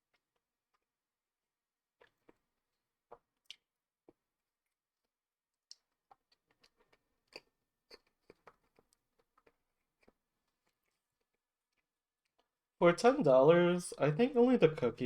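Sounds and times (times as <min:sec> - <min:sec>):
chewing: 0:05.7 - 0:12.6.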